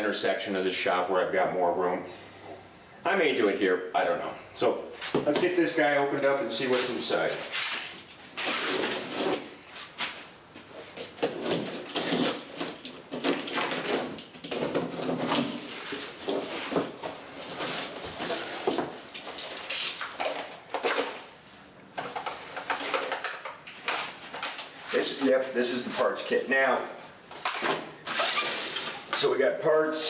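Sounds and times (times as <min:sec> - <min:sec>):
cardboard rustling and scraping: 0:06.6 - 0:20.6.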